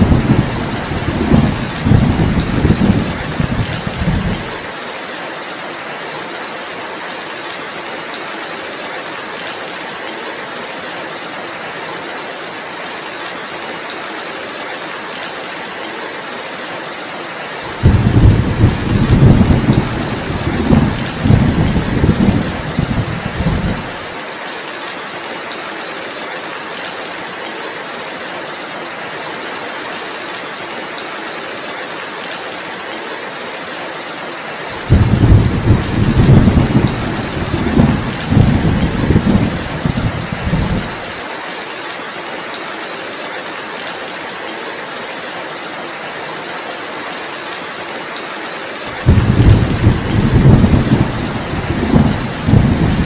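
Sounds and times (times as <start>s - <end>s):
rolling thunder: 0.0s - 4.5s, 17.8s - 23.9s, 34.8s - 41.1s, 49.0s - 53.0s
heavy rain: 0.0s - 53.0s.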